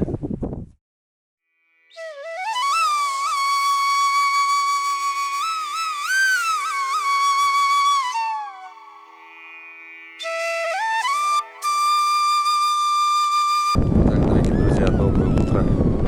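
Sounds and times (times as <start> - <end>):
solo melody: 1.6 - 16.0
faint steady drone: 3.1 - 14.0.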